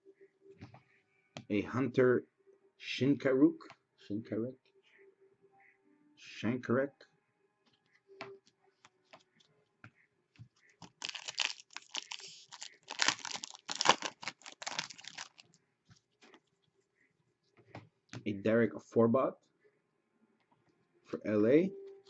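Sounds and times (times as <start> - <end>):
wrapper tearing and crinkling: 10.8 - 15.5.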